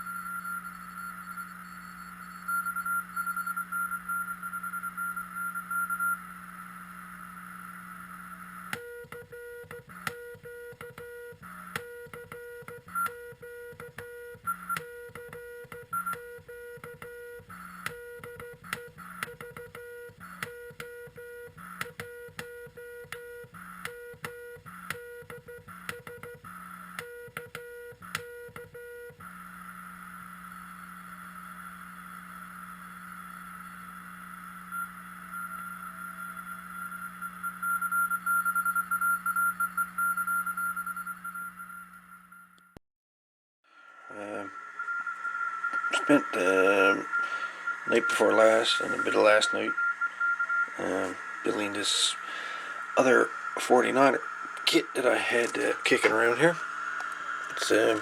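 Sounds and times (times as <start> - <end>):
morse code beeping: 0.0 - 6.2, 44.1 - 58.0
radio receiver hiss: 43.7 - 58.0.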